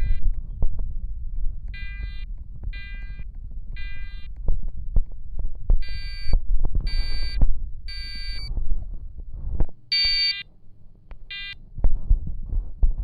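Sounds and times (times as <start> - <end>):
low rumble: 0.0 - 9.8
fire alarm horn blasts: 9.9 - 10.4.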